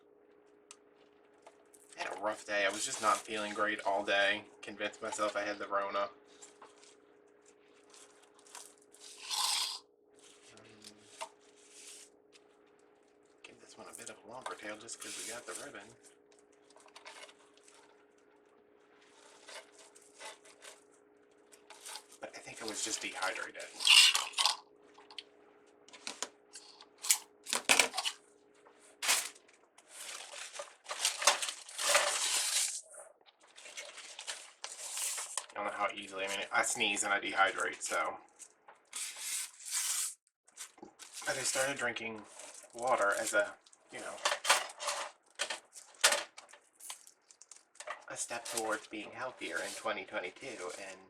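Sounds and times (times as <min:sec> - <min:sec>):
ribbon rustling and crinkling: 0:29.0 - 0:32.8, 0:33.4 - 0:35.6, 0:37.5 - 0:51.0.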